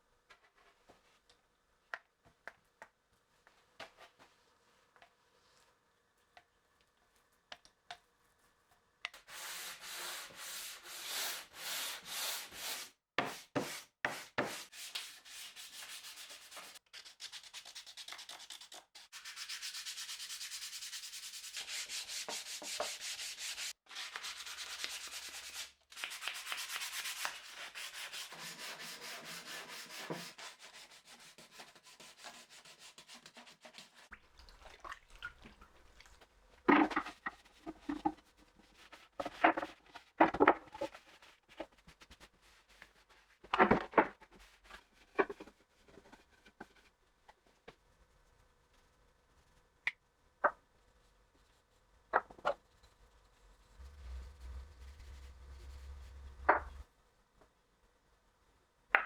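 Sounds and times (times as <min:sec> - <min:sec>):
sandpaper rubbing on wood: 0:09.3 - 0:33.8.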